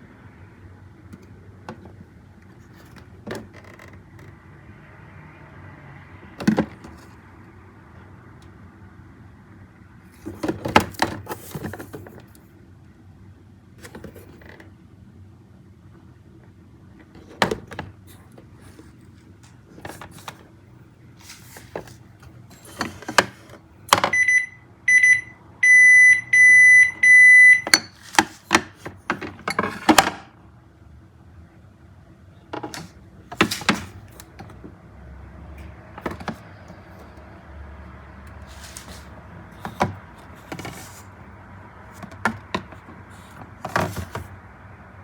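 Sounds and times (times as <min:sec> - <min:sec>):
knocks and clatter of handling: 0:06.4 - 0:07.2, 0:10.2 - 0:12.4, 0:17.0 - 0:20.6, 0:21.2 - 0:24.2, 0:27.6 - 0:30.3, 0:32.5 - 0:34.8, 0:35.6 - 0:37.3, 0:38.4 - 0:44.4
refrigerator alarm beeping: 0:24.0 - 0:28.0.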